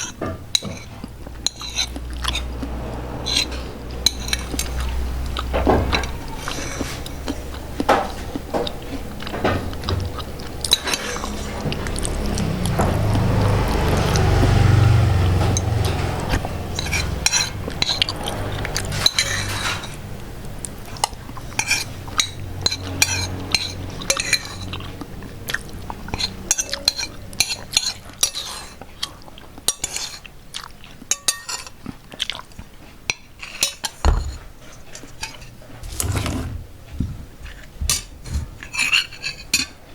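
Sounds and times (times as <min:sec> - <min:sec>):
spoon clinking against plate: 0:18.9 - 0:20.0, 0:31.1 - 0:31.7.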